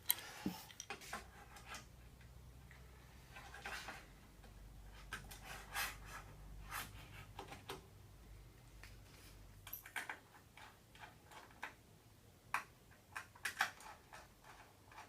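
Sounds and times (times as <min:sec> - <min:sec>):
small screws clicking: 0:00.0 - 0:01.0.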